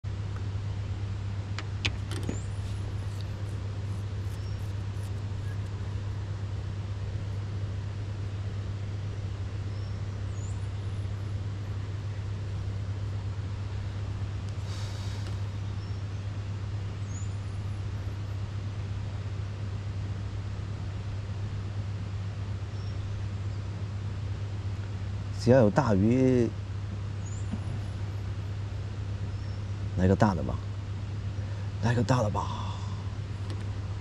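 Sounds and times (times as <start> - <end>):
brief hiss: 14.6 - 15.5.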